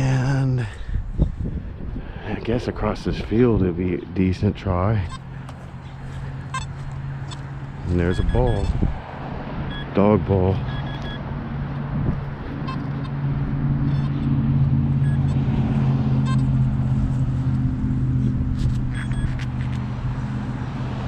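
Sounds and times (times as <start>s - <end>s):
faint short high beeps: 8.0s - 8.8s.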